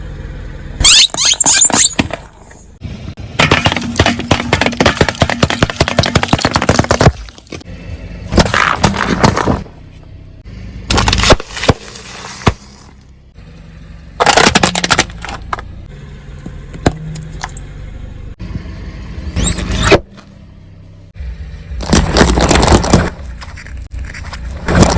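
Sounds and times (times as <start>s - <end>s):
car tyre crushing objects: 0.8s - 13.4s, 14.1s - 15.7s, 21.6s - 24.9s.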